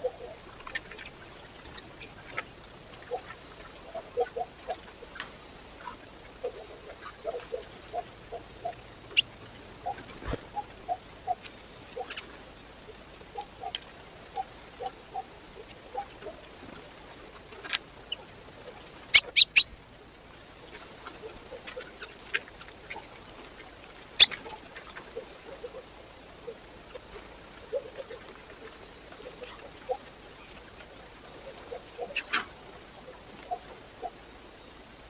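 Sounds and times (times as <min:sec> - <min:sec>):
light taps and pecks: 0:05.1 - 0:05.4.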